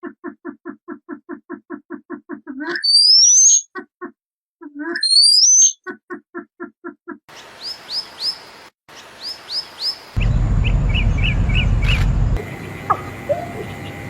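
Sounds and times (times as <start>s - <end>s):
birds calling: 7.3s - 14.0s
high down-slurred chirps: 10.2s - 14.0s
loud low rumble: 10.2s - 14.0s.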